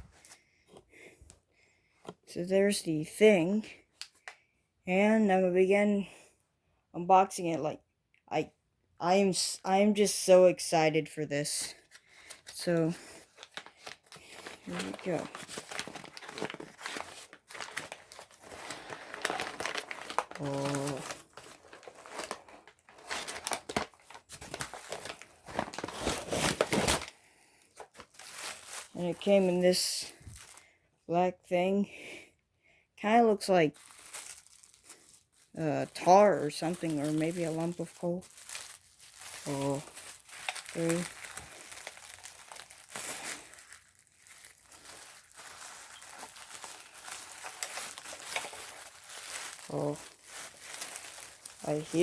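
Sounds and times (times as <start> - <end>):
packaging crinkling and rustling: 11.5 - 30.8, 33.4 - 52.0.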